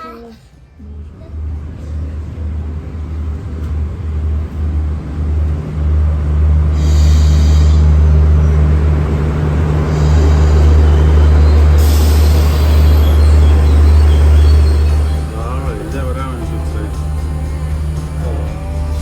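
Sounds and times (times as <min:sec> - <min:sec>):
diesel train engine rumble: 0:00.0 - 0:19.0
train brakes hissing: 0:06.4 - 0:19.0.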